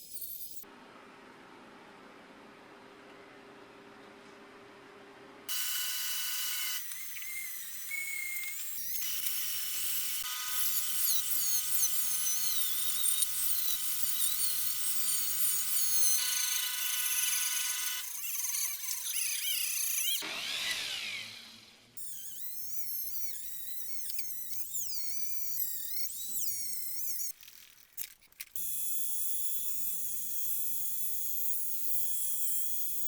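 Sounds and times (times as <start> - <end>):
power tool high-pitched whine: 5.5 - 27.1.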